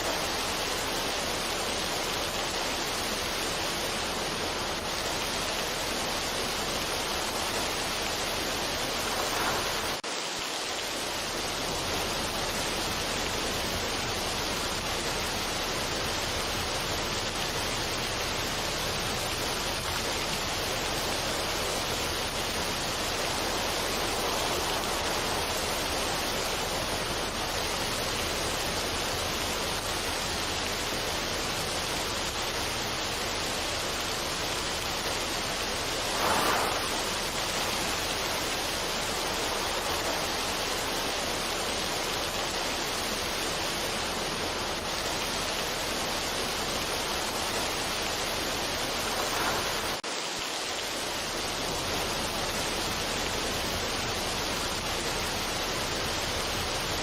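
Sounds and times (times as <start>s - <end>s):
steady rushing noise: 0.0s - 57.0s.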